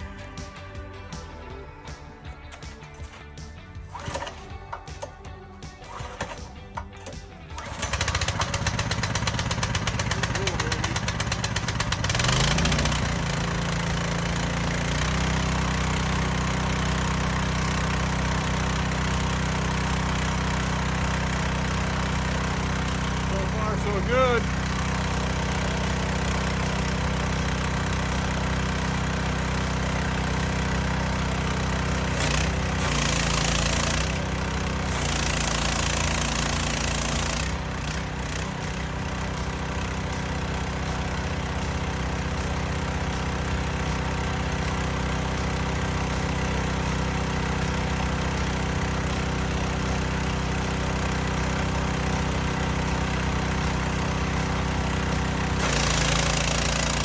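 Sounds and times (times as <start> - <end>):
pressure washer engine running: 0.0 - 57.0.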